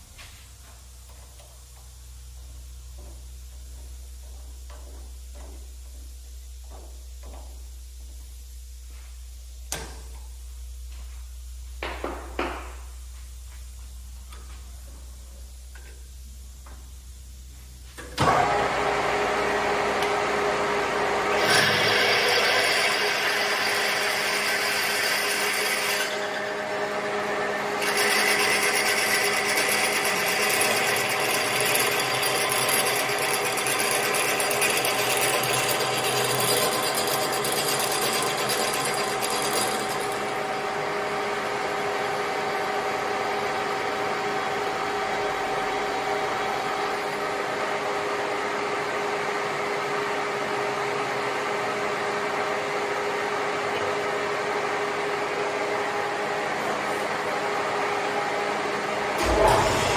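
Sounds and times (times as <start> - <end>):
power tool motor whining: 18.3 - 40.3, 59.2 - 59.9.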